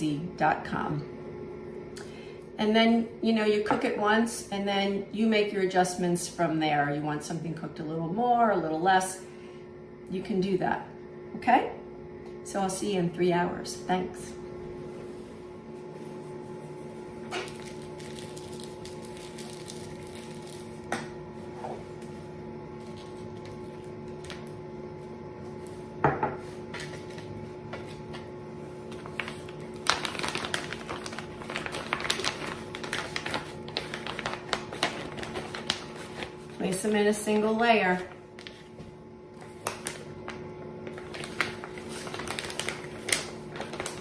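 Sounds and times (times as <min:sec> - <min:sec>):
steady hum: 0:00.0 - 0:44.0.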